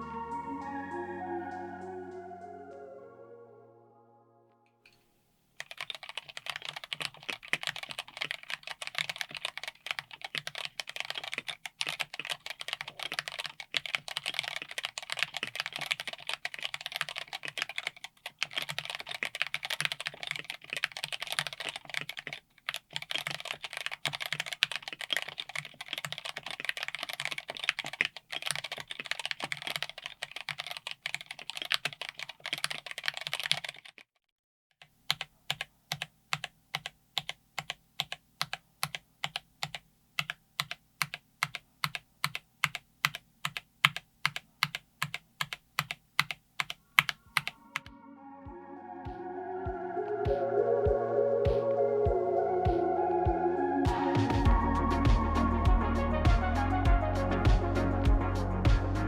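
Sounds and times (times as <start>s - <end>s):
fast typing on mechanical keyboard: 5.6s - 34.1s, 34.8s - 47.6s.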